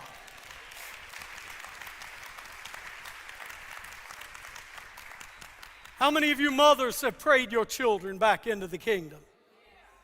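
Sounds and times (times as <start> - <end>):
congregation applauding: 0.0 - 8.0.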